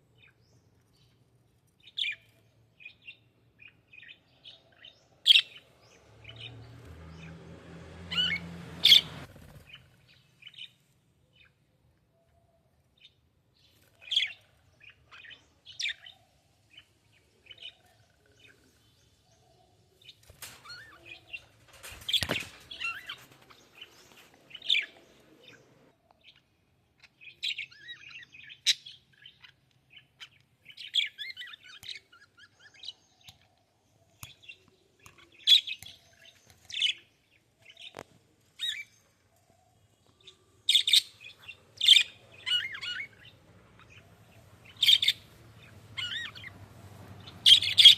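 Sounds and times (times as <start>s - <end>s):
small birds chirping: 0.0s - 47.9s.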